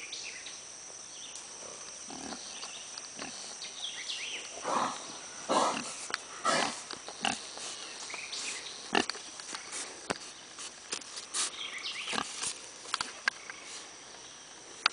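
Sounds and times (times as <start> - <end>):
pigs grunting: 1.6 - 2.6, 3.2 - 3.6, 4.6 - 7.7.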